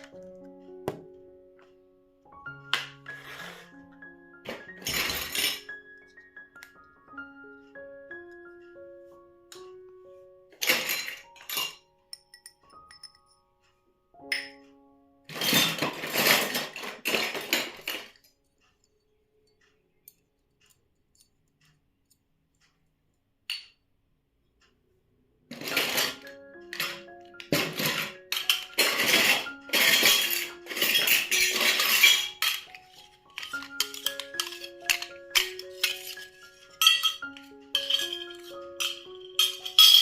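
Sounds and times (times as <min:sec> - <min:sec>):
toy kitchen pieces clinking: 0:04.5 - 0:05.8, 0:10.5 - 0:13.4, 0:15.3 - 0:18.4, 0:25.5 - 0:40.0.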